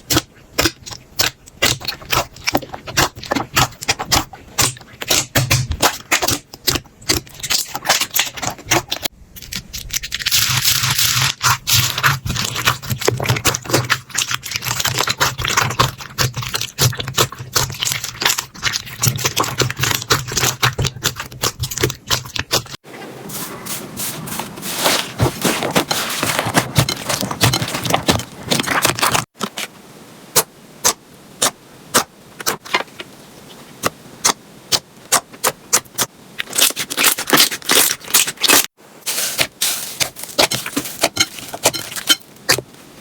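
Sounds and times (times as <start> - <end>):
slime crackling and popping: 0.1 - 22.8, 35.4 - 42.6.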